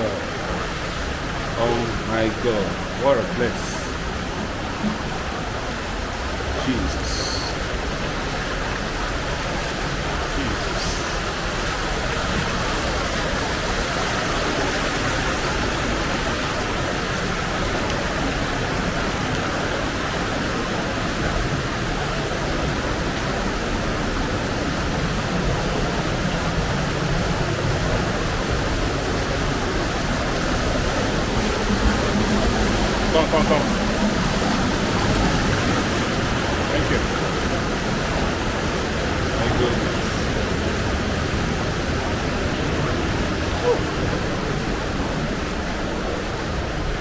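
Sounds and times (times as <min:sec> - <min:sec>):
waterfall pouring in a cave: 0:00.0 - 0:47.0.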